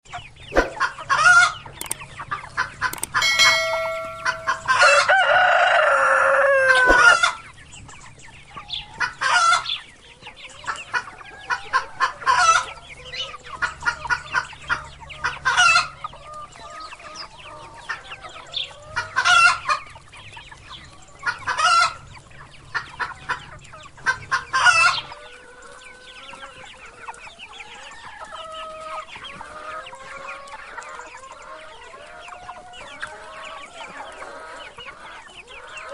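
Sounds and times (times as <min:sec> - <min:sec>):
rooster crowing: 0:04.8 - 0:07.2
chickens clucking: 0:06.2 - 0:07.2, 0:23.8 - 0:35.9.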